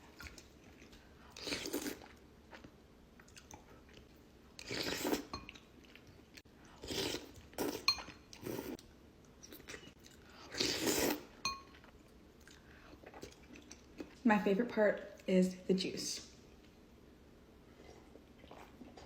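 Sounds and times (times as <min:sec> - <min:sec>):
chewing noodles: 0:00.1 - 0:08.8, 0:09.4 - 0:14.2, 0:17.8 - 0:19.0.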